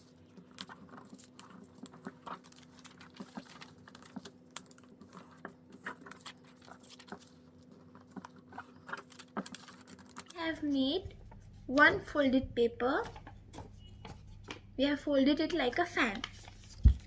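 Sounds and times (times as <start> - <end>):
paper folding crackles: 0.0 - 12.0, 15.4 - 17.0.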